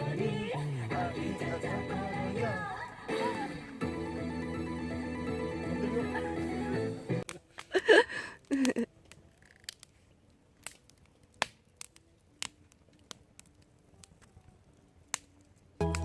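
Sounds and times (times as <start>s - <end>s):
campfire crackling: 0.0s - 16.0s
sharp fire pops: 10.6s - 14.2s.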